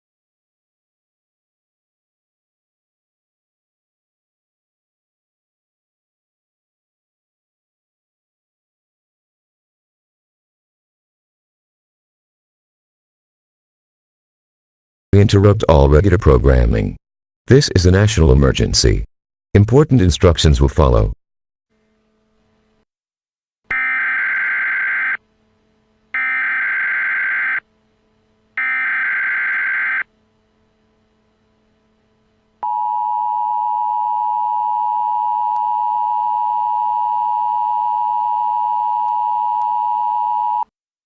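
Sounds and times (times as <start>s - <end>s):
digital data bursts: 26.2s - 27.6s, 28.6s - 30.1s
two-tone attention signal: 26.2s - 27.6s, 28.6s - 30.1s.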